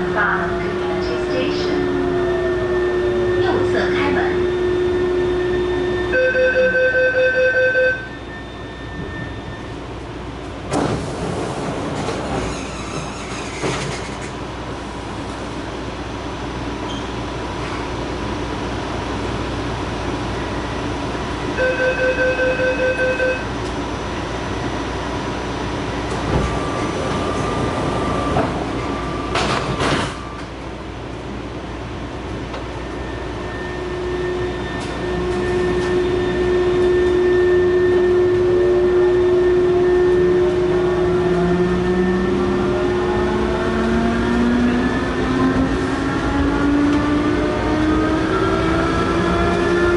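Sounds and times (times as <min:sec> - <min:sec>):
train running rumble: 0:00.0 - 0:06.2, 0:08.9 - 0:21.6, 0:22.2 - 0:49.9
traction drive whine: 0:22.8 - 0:49.9.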